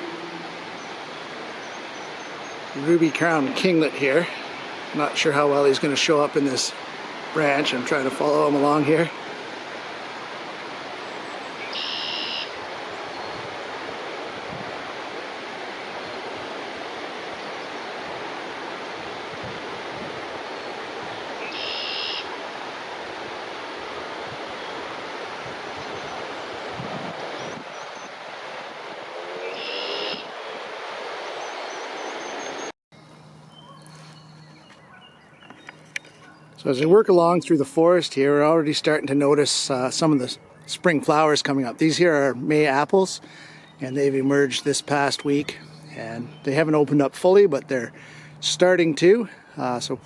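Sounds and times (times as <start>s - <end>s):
steady rushing outdoor noise: 0.0s - 50.0s
songbird buzzy trill: 11.0s - 13.4s, 21.4s - 22.3s, 29.4s - 30.3s.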